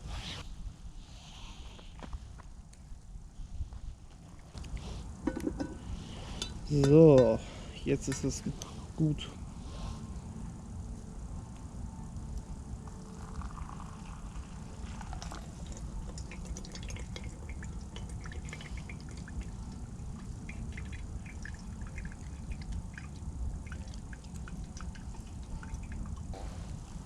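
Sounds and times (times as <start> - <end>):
low steady rumble: 0.0 - 27.0
water pouring and dripping: 12.9 - 26.4.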